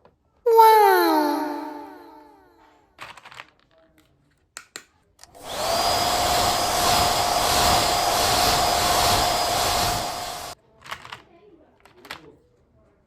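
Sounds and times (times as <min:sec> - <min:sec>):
small electric motor whine: 0:05.4 - 0:10.6.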